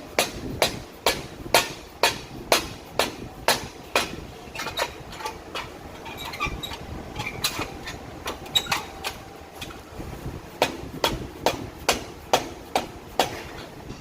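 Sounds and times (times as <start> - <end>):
hammer blows on metal: 0.0 - 5.6, 10.6 - 14.0.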